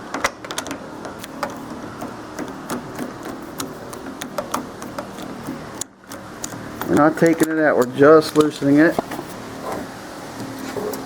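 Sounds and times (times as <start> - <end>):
hand tool clicking on screw: 0.1 - 8.6.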